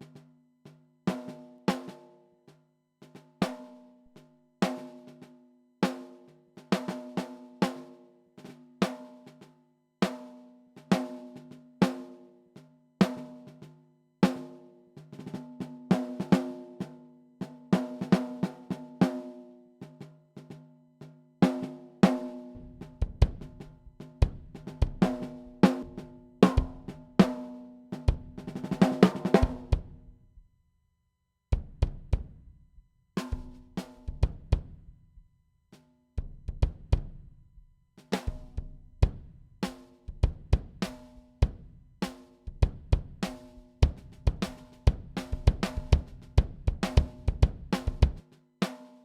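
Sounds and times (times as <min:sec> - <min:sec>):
fast drum fill: 0:21.4 - 0:30.0, 0:38.2 - 0:48.8
bass drum: 0:22.6 - 0:27.0, 0:28.1 - 0:30.3, 0:31.6 - 0:32.6, 0:33.3 - 0:35.0, 0:36.2 - 0:37.5, 0:38.3 - 0:48.2.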